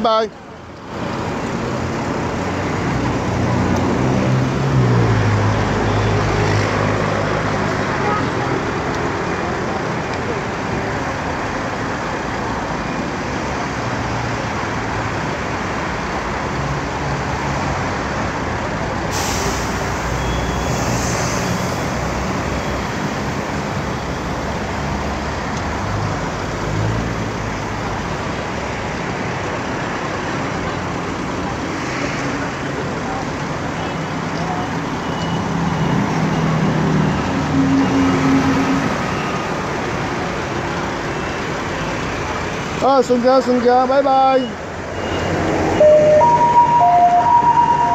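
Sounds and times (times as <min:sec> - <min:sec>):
rumble of passing vehicles: 0:00.0 - 0:47.9
sharp hiss: 0:19.1 - 0:22.1.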